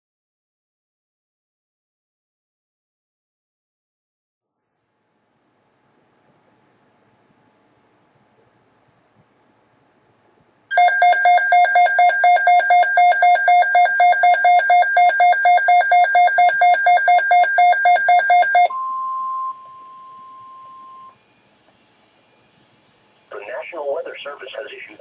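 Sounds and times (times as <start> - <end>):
rapid alarm beeping: 10.7 - 21.2
steady warning tone: 10.7 - 22.5.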